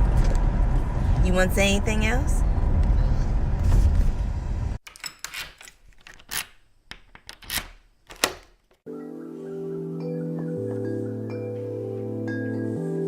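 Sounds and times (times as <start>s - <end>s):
music with bell-like tones: 8.9s - 13.0s.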